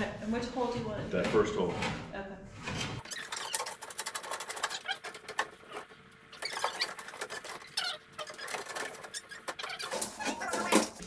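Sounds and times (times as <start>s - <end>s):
pipes scratching and clicking: 3.0s - 11.0s.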